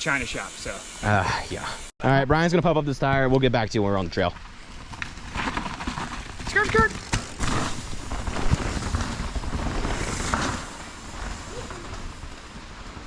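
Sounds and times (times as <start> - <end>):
mountain bike rolling on trail: 3.5 - 13.0
wind rumbling on microphone: 4.9 - 13.0.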